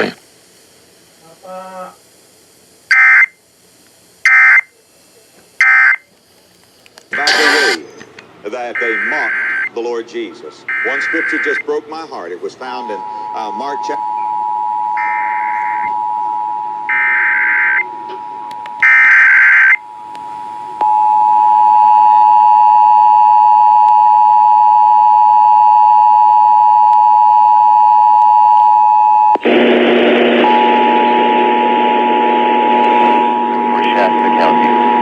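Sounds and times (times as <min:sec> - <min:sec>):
warbling data bursts: 0:07.1 - 0:07.9, 0:10.7 - 0:15.9, 0:30.5 - 0:35.0
steady two-tone attention signal: 0:07.2 - 0:07.8, 0:12.6 - 0:19.0, 0:30.0 - 0:35.0.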